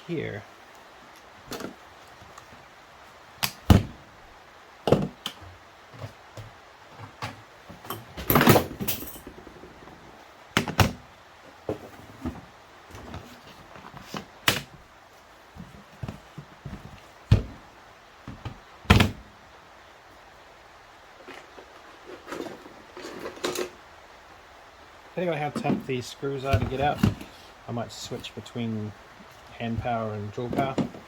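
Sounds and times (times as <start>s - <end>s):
tools rattling: 7.2s - 9.7s, 21.2s - 23.8s.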